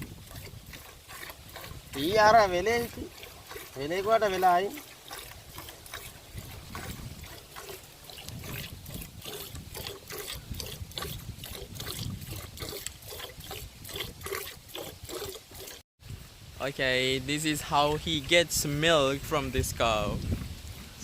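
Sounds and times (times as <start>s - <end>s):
milk squirting into a pail: 0.0s - 15.8s.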